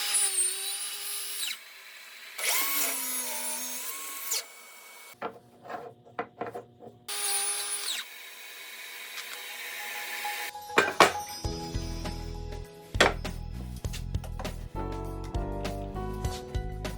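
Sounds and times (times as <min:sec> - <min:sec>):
power tool motor whining: 0:00.0 - 0:05.2, 0:07.1 - 0:10.5.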